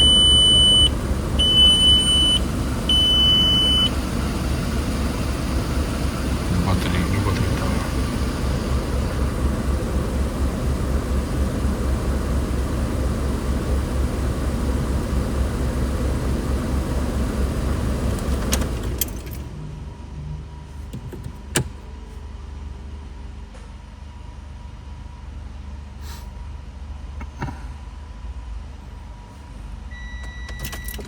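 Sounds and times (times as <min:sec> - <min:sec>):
car engine idling: 0:00.0 - 0:19.5.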